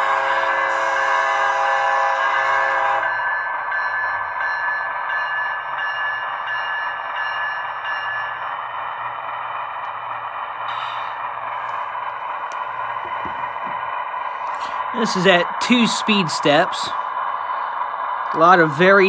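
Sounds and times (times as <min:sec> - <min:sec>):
multi-chime train horn: 0:00.0 - 0:03.4
locomotive bell ringing: 0:01.8 - 0:09.2, 0:14.5 - 0:17.0
diesel engine running: 0:08.4 - 0:19.0.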